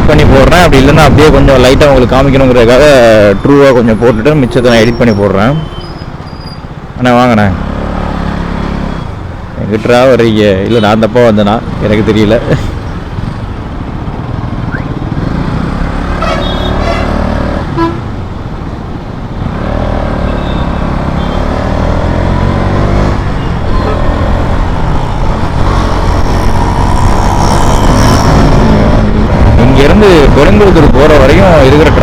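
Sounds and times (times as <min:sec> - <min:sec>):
car horn toots: 0:16.2 - 0:18.1
motorcycle engine accelerating: 0:19.4 - 0:30.3
wind rushing over microphone: 0:23.1 - 0:32.0.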